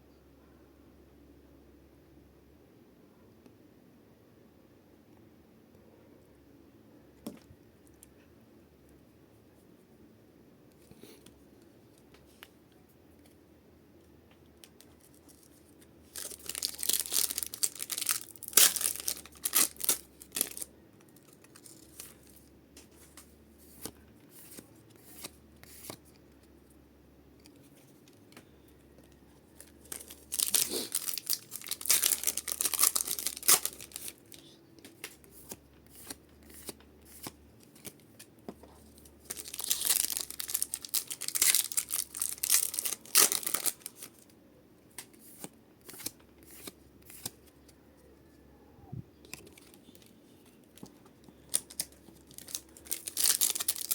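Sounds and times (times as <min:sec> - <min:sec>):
foil packs tearing and crinkling: 0:16.1 - 0:20.7, 0:29.8 - 0:34.2, 0:39.2 - 0:44.2, 0:51.5 - 0:53.9.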